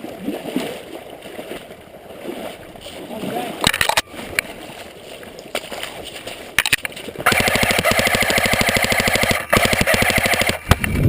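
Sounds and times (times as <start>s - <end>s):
airsoft rifle firing: 7.2s - 10.8s.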